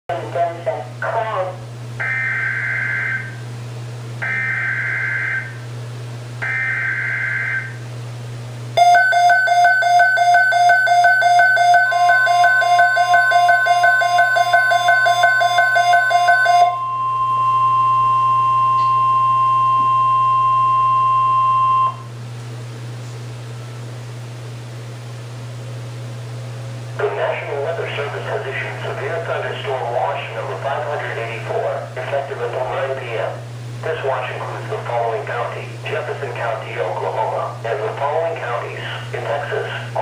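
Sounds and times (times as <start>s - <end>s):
pulsing electronic alarm beep: 2.0s - 3.4s, 4.2s - 5.6s, 6.4s - 7.8s, 8.8s - 22.1s
steady alert tone: 8.8s - 22.0s.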